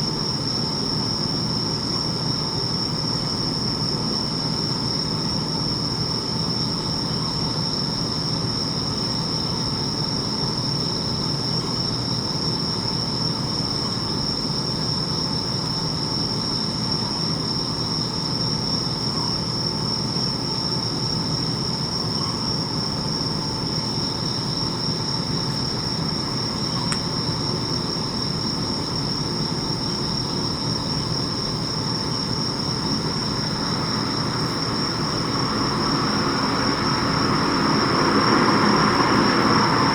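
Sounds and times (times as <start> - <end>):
crickets chirping chorus: 0.0 - 39.9
low background rumble: 30.1 - 39.9.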